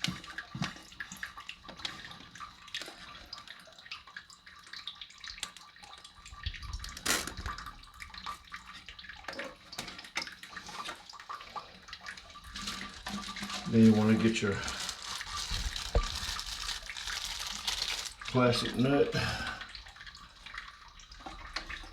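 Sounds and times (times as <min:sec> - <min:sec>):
water splashing in toilet tank: 0:00.0 - 0:21.9.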